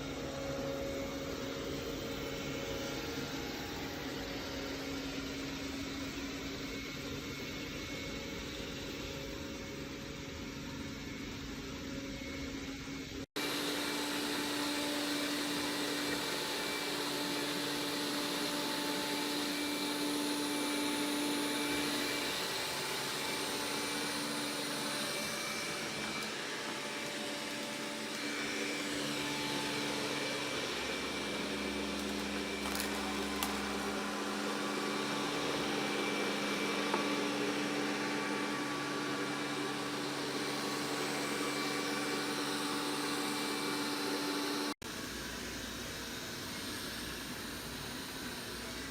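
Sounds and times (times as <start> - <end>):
robot vacuum whirring: 13.4 - 44.7.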